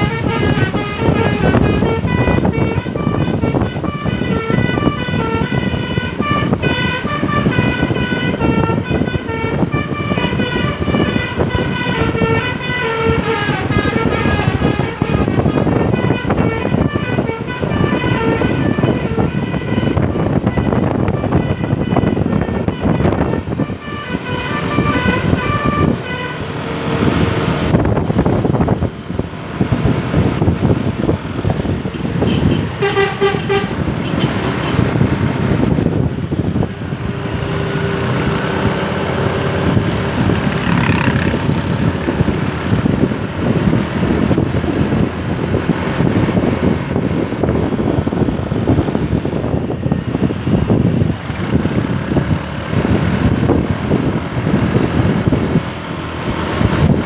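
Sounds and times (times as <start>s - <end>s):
musical bus air horn: 0.0s - 26.7s, 31.9s - 34.9s
engine road and wind noise: 0.0s - 57.0s.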